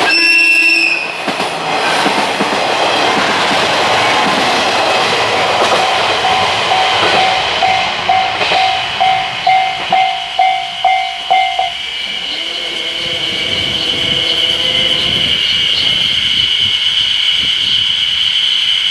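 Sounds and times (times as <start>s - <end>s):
train rumble and wheel clatter: 0.0s - 18.9s
faint high dings: 5.8s - 12.0s.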